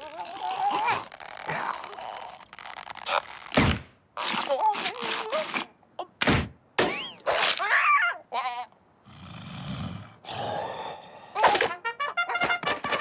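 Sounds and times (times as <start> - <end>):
cartoon groans and gasps: 0.0 - 2.6
long breathy rushes: 9.1 - 11.4.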